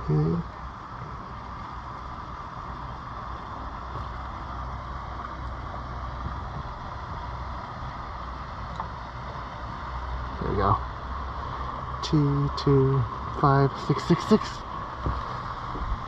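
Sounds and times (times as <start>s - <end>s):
low rumble: 0.0s - 16.0s.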